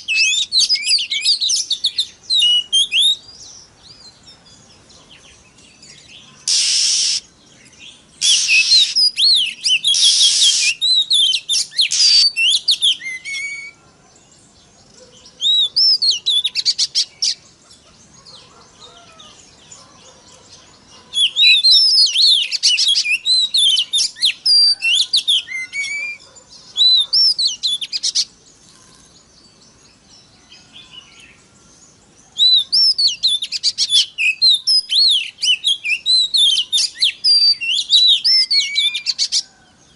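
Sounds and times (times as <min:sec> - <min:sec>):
bird singing whistled phrases: 0:00.0 - 0:03.4, 0:06.4 - 0:07.3, 0:08.2 - 0:13.8, 0:15.4 - 0:17.4, 0:21.2 - 0:28.3, 0:32.4 - 0:39.4
harsh noisy bird notes: 0:06.0 - 0:13.8.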